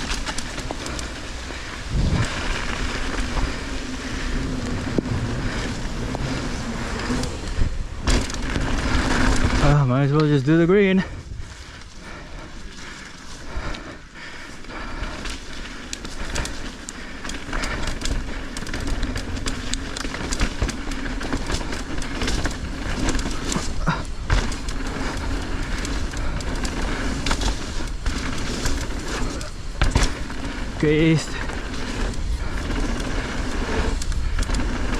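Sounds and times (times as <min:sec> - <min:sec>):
low rumble: 0:00.0 - 0:09.9
bike rattling over rough trail: 0:00.0 - 0:34.9.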